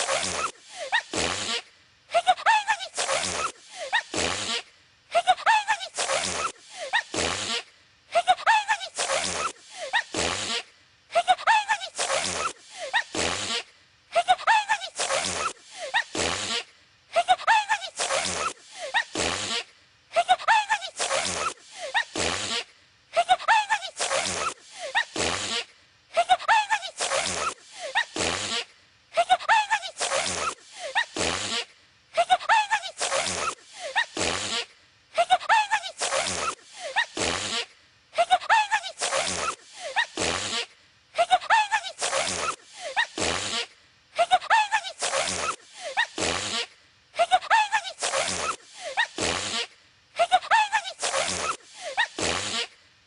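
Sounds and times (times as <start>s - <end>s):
cartoon voice gasping: 0.0s - 4.2s, 14.1s - 16.6s, 17.2s - 19.6s, 20.2s - 22.6s, 23.2s - 25.3s, 26.2s - 28.3s, 29.2s - 31.3s, 32.2s - 34.6s, 35.2s - 37.3s, 38.2s - 43.3s, 44.2s - 49.3s, 50.2s - 52.7s
cartoon voice sneezing: 0.0s - 52.8s.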